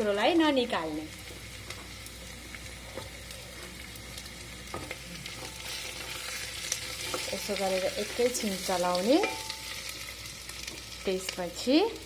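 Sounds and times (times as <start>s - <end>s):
oil sizzling: 0.0s - 12.0s.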